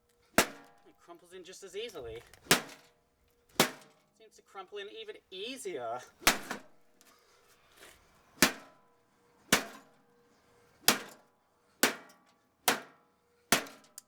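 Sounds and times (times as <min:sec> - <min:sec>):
golf club hitting sheet metal: 0:00.4 - 0:00.8, 0:02.4 - 0:02.9, 0:03.6 - 0:03.9, 0:06.2 - 0:06.7, 0:07.8 - 0:08.7, 0:09.5 - 0:09.9.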